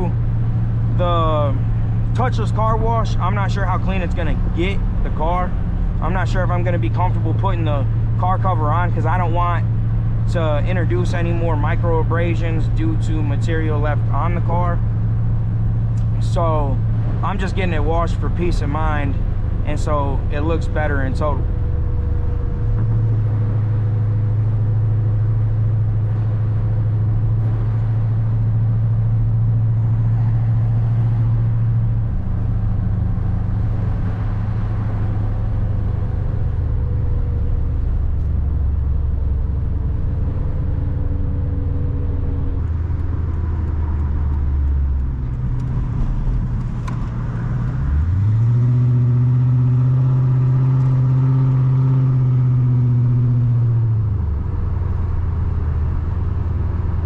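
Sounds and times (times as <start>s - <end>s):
car engine droning inside car: 0.0s - 57.0s.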